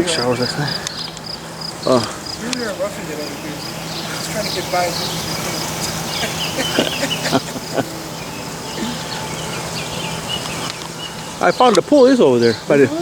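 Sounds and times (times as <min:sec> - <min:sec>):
high chirping calls: 0:00.0 - 0:13.0
steady low hum: 0:00.0 - 0:13.0
sharp clicks: 0:10.4 - 0:11.9.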